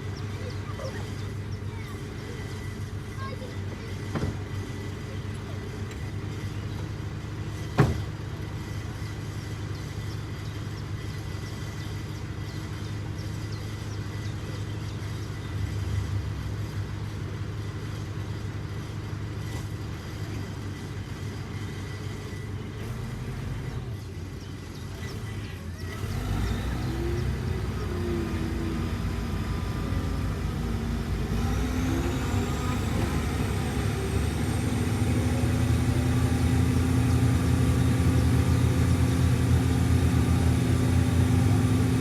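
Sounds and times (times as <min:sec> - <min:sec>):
heavy diesel engine running: 0:00.0 - 0:42.0.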